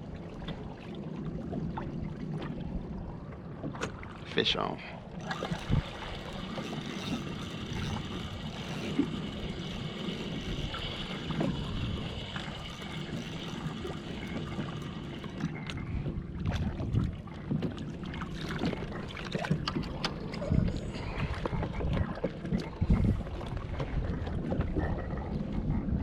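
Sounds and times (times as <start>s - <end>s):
water and hull noise: 0.0s - 26.0s
sharp reel clicks: 5.2s - 15.5s
fishing reel winding: 5.2s - 15.9s.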